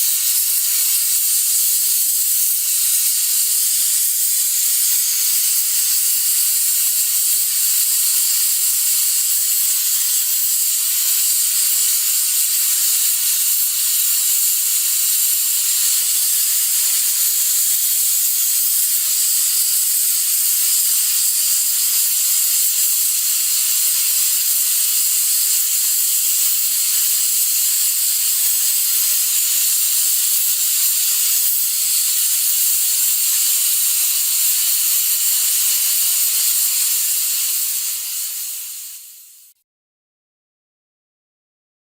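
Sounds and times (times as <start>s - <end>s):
pressure cooker hissing steam: 0.0s - 39.6s.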